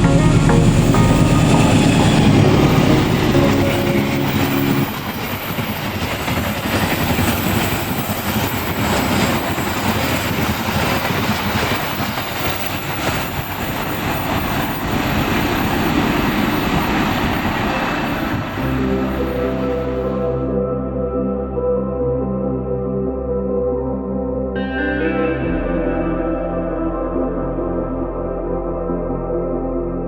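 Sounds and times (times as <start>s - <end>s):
background music: 0.0s - 5.7s, 17.4s - 30.0s
train rumbling past on rails: 0.0s - 20.5s.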